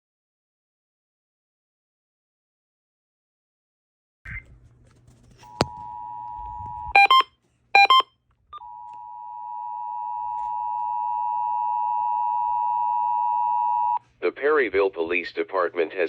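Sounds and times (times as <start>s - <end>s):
beeping data tones: 7.0s - 8.0s
two-tone alert tone: 7.0s - 8.0s.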